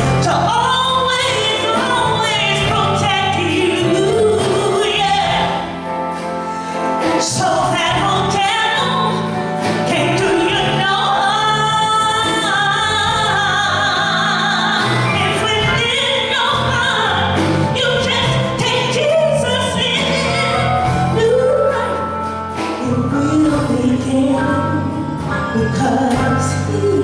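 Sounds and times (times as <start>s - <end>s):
instrumental accompaniment: 0.0s - 27.0s.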